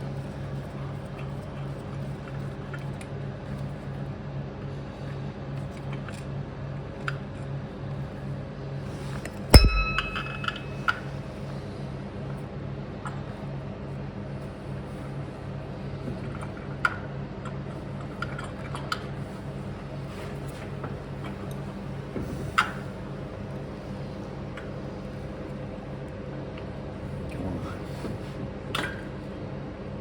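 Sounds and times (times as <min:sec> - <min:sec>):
low pulsing hum: 0:09.6 - 0:11.0.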